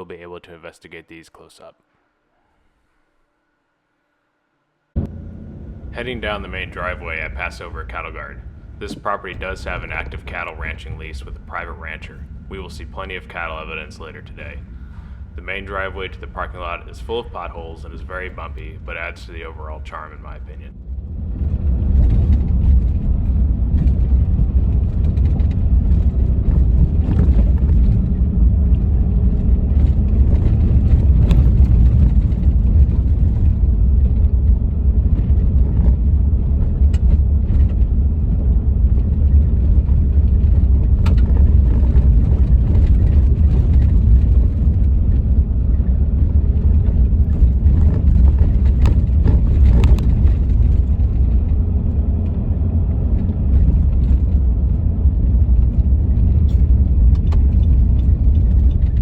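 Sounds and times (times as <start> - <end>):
tyres rumbling on road: 5.0 - 59.0
vehicle knocks and rattles: 8.8 - 11.7, 20.9 - 59.0.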